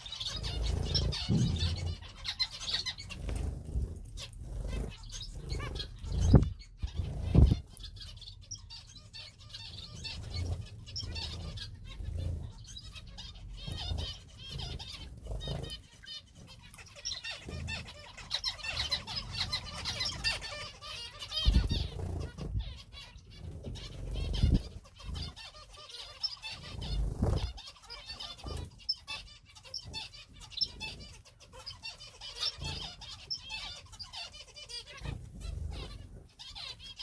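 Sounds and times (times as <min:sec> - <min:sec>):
wings fluttering: 0:00.0 - 0:08.1, 0:09.6 - 0:28.8
finches chirping: 0:00.0 - 0:37.0
low thumps: 0:00.8 - 0:02.0.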